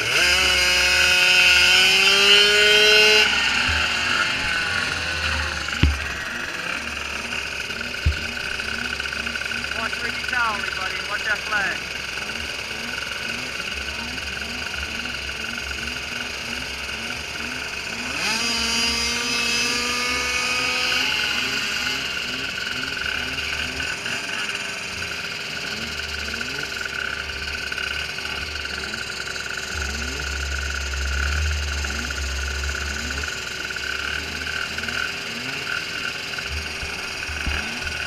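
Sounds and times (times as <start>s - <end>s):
small engines revving: 0.0s - 38.0s
rhythmic croaking chirp: 0.9s - 17.4s, 25.4s - 38.0s.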